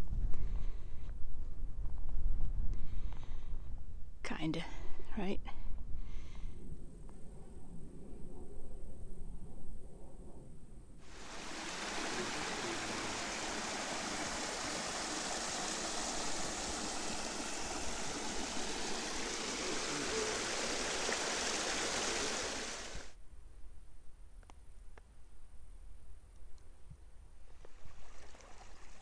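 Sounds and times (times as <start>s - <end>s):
creek water rushing: 11.1s - 23.1s, 27.8s - 29.0s.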